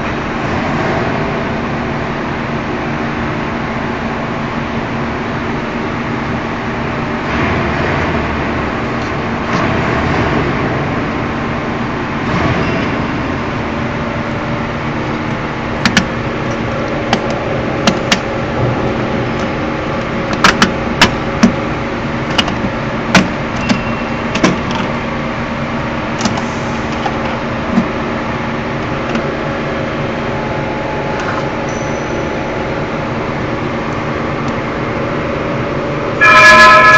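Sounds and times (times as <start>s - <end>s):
wire-cutting machine humming: 5.7s - 31.7s.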